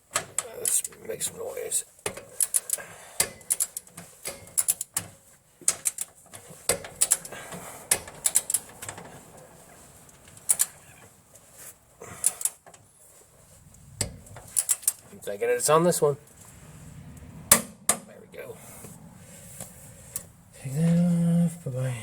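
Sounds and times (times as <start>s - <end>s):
ratchet wrench clicking: 5.7s - 9.0s.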